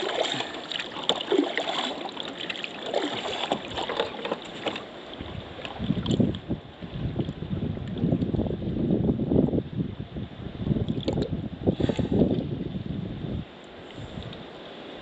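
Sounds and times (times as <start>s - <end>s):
water slapping against kayak: 0.0s - 8.5s
wind buffeting microphone: 5.2s - 14.4s.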